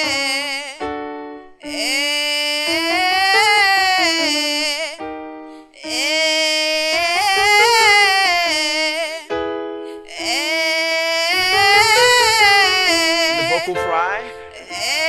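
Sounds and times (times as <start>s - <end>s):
person singing scale exercise: 9.9s - 15.0s
keyboard held tones: 11.4s - 15.0s.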